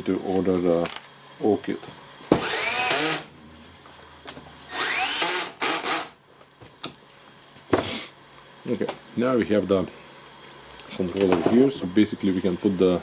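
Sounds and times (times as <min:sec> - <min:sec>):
electric screwdriver whining: 0:02.4 - 0:03.3, 0:04.7 - 0:06.1.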